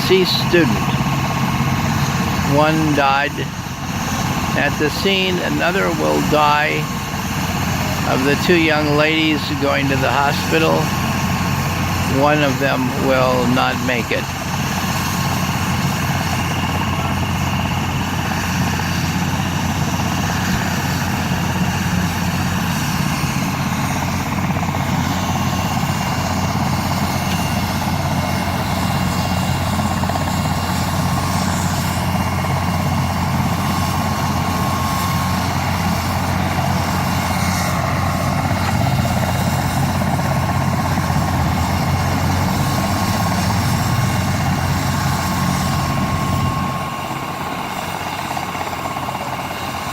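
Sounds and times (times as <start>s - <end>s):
high whine: 0.0s - 18.7s
helicopter rotor beat: 0.0s - 49.9s.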